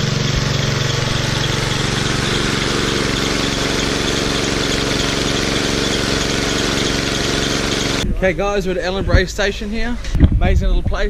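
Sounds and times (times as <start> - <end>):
dirt bike engine idling: 0.0 - 8.0.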